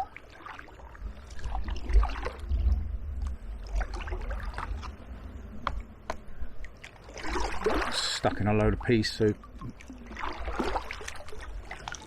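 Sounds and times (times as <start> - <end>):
low rumble: 1.0 - 6.8
paddle splashing and dripping: 6.1 - 8.2, 8.8 - 12.0.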